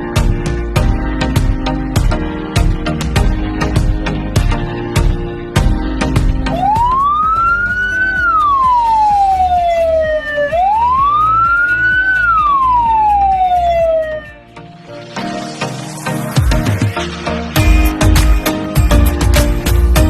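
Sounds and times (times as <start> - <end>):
background music: 0.0 - 20.0
ambulance siren wailing: 6.4 - 14.4.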